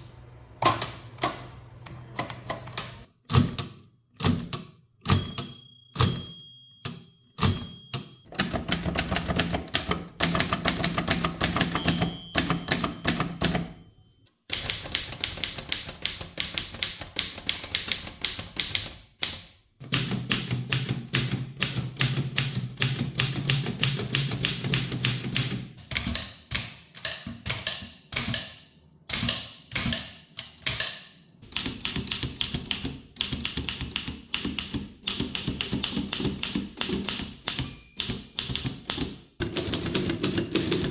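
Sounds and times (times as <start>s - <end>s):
typewriter typebar clacks: 0.6s - 13.7s, 14.5s - 40.9s
typewriter margin bell ding: 5.1s - 8.3s, 11.6s - 14.2s, 17.3s - 18.8s, 37.5s - 38.8s.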